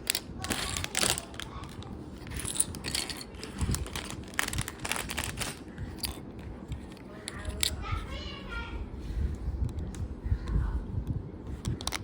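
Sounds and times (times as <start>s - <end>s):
plastic bricks rattling: 0.0s - 6.2s.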